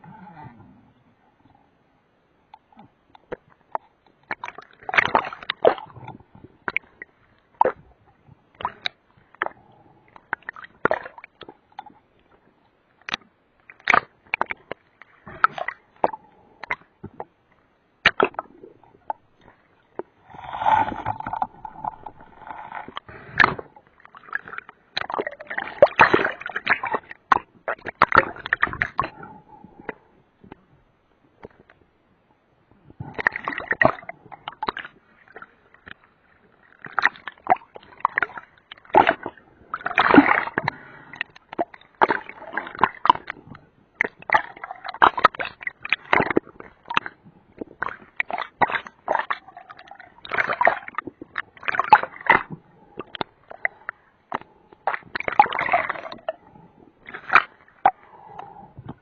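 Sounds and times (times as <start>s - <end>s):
water sloshing and splashing: 2.5s - 30.7s, 32.8s - 59.0s
gurgling splashing bursts: 20.2s - 27.0s.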